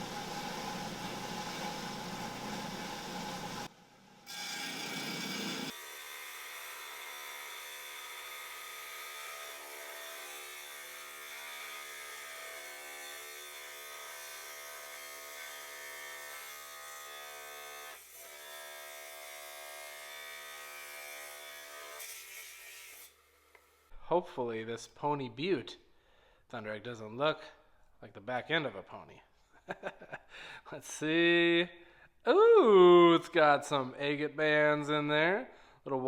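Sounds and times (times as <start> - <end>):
rock saw buzzing: 0.0 - 3.7, 4.3 - 5.9.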